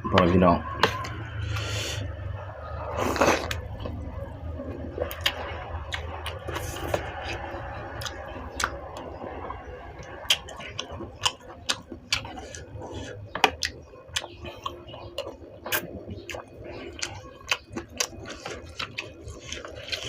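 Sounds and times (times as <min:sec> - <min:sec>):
steady low hum: 0:00.0 - 0:20.0
person chewing: 0:00.8 - 0:20.0
person slurping soup: 0:02.9 - 0:03.9, 0:12.2 - 0:13.3.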